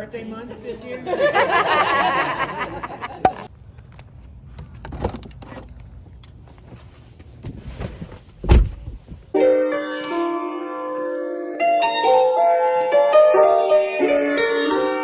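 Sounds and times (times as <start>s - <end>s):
heavy deep thump: 7.8s - 9.3s
piano music: 9.3s - 15.0s.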